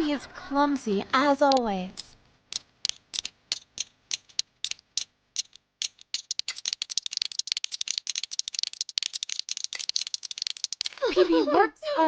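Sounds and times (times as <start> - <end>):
cartoon clicking rattle: 1.5 - 11.1.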